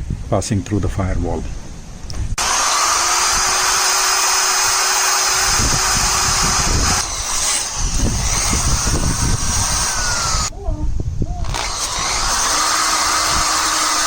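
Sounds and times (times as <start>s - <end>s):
power tool grinding metal: 2.4s - 10.5s, 11.4s - 14.0s.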